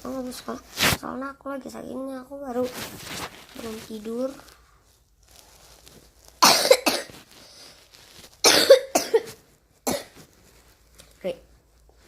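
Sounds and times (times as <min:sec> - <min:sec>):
child coughing: 0:06.4 - 0:07.2, 0:08.4 - 0:10.2.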